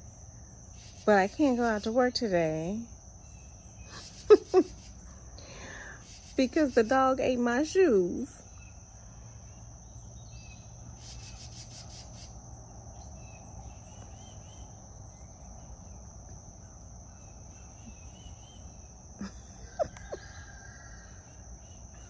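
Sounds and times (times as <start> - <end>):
insects droning: 0.0 - 22.0
small birds chirping: 8.4 - 22.0.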